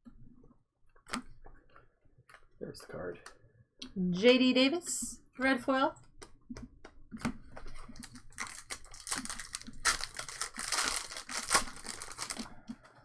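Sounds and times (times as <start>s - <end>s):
packaging crinkling and rustling: 7.4s - 12.6s.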